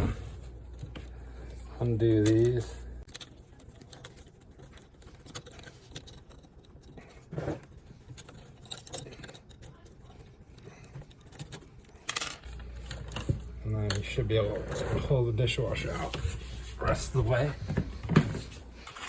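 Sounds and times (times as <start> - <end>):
clicks and scrapes of hand work: 2.2 - 14.0.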